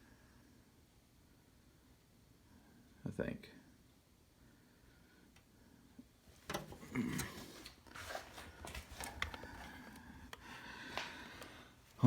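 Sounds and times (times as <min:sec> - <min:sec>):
faint handling noises: 0:06.3 - 0:12.0.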